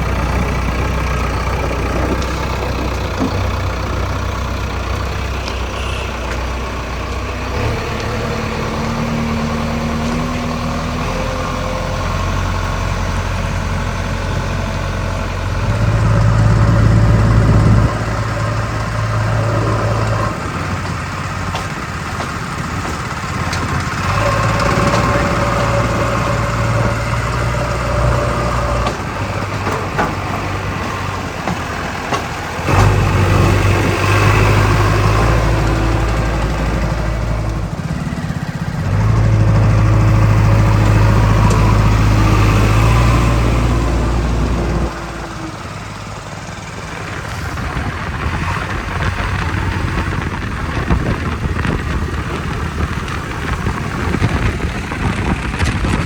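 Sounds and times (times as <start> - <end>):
heavy diesel engine revving: 0.0 - 56.0.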